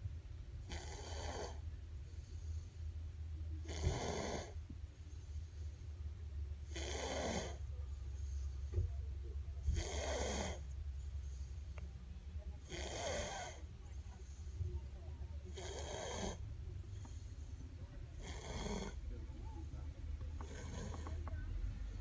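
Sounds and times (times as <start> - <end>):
steady low hum: 0.0 - 22.0
person snoring: 20.4 - 21.2.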